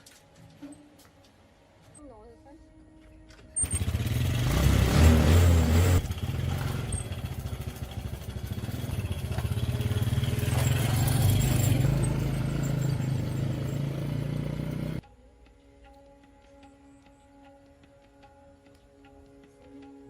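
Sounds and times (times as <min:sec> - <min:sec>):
small motorcycle engine running: 0:03.6 - 0:15.0.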